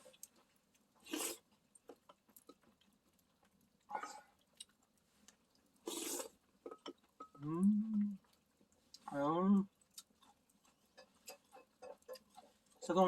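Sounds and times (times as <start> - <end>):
person chewing: 0.0 - 12.8
person humming: 7.4 - 8.2.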